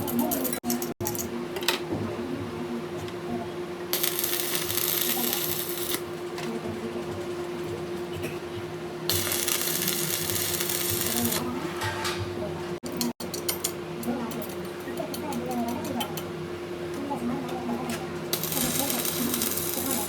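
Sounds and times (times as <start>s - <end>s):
machine humming: 3.9s - 6.3s, 8.0s - 11.6s, 18.3s - 20.0s.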